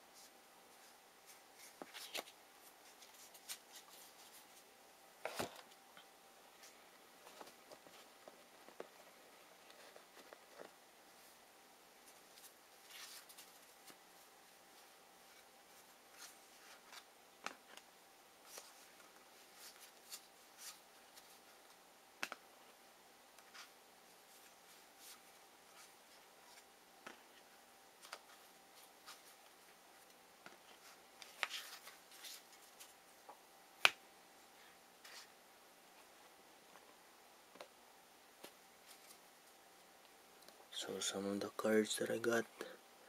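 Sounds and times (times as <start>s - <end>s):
faint steady hum: 0.0s - 43.0s
light rustles of cards: 0.1s - 11.4s, 12.0s - 22.4s, 28.0s - 33.0s, 33.8s - 37.7s, 38.4s - 39.6s.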